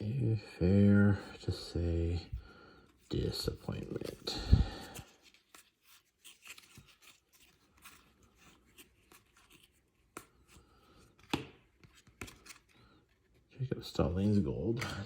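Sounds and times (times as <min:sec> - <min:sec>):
trading cards rustling and sliding: 0:02.8 - 0:15.0
card snaps: 0:11.2 - 0:12.6.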